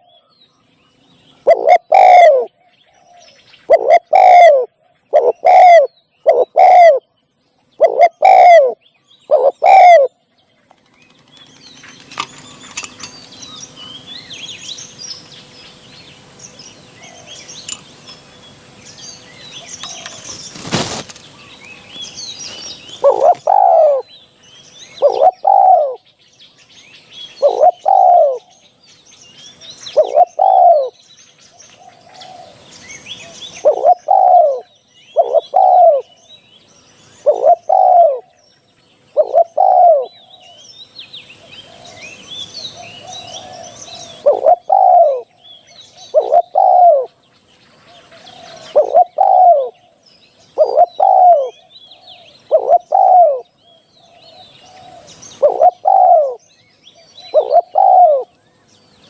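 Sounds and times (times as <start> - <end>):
small birds chirping: 0.0 - 59.0
dove cooing: 1.4 - 7.1, 7.8 - 10.2, 19.6 - 21.3, 22.4 - 24.2, 24.9 - 26.1, 27.3 - 28.5, 29.8 - 31.0, 31.8 - 36.2, 37.2 - 38.4, 39.1 - 40.6, 42.6 - 45.4, 46.0 - 47.2, 47.9 - 53.5, 54.1 - 56.4, 57.2 - 58.4.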